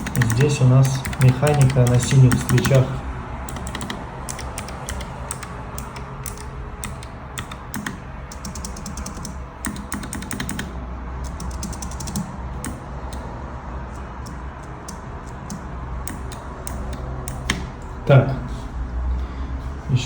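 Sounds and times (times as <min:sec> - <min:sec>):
mechanical keyboard key clicks: 0:00.0 - 0:02.8, 0:03.5 - 0:10.7, 0:14.2 - 0:17.7.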